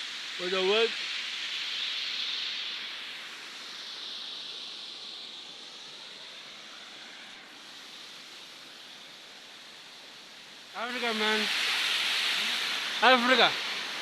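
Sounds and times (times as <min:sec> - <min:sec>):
water rushing over waterfall: 0:06.8 - 0:14.0.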